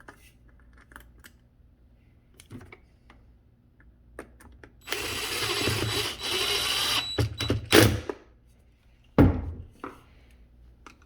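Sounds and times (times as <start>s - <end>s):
power drill running: 4.8s - 8.1s.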